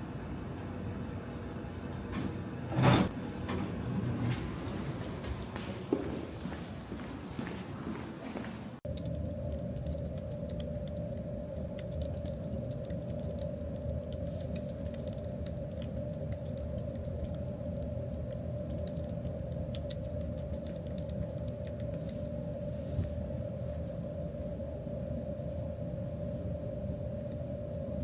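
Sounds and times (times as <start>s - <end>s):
low rumble with hum: 8.8s - 28.0s.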